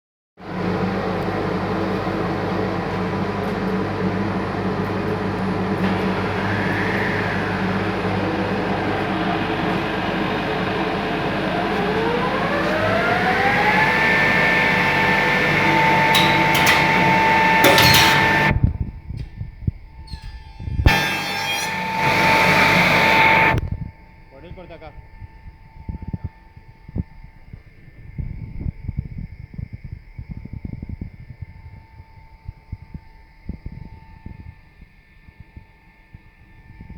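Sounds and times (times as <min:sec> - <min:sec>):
machine mechanical hum: 0:00.4 - 0:36.9
motor whine: 0:00.8 - 0:36.9.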